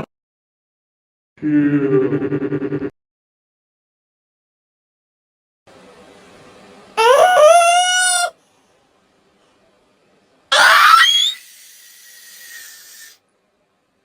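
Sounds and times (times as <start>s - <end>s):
cartoon voice sneezing: 7.0s - 8.3s.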